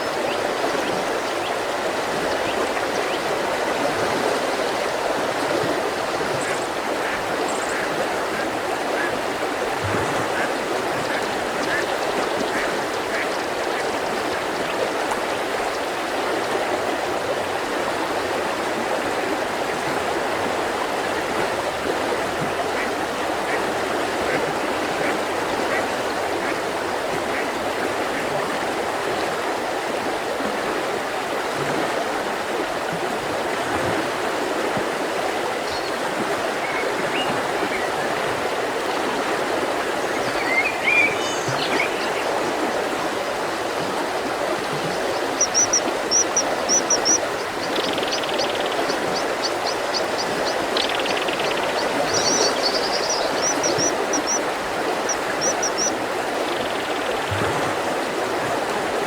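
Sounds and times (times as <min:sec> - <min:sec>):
river flowing: 0:00.0 - 0:59.0
small birds chirping: 0:44.9 - 0:54.4.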